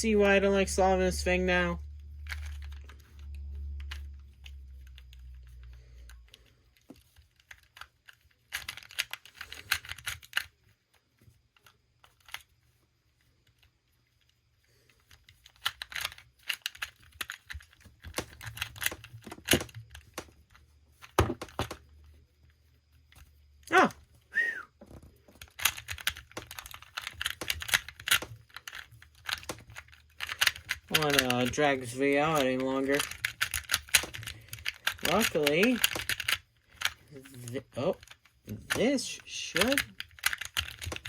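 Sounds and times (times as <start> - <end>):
puzzle cube clicking: 2.2 - 10.5, 15.0 - 21.9, 25.4 - 41.0.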